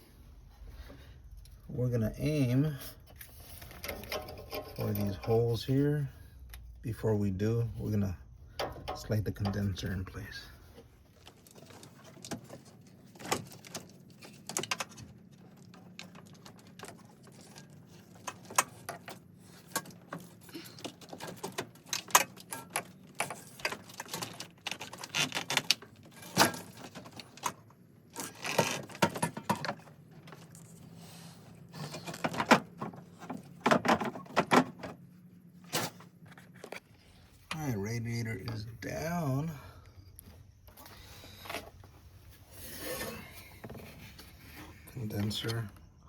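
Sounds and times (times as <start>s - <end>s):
faint steady hum: 0.0s - 46.0s
plastic and metal parts rattling: 3.1s - 5.4s, 8.5s - 36.9s.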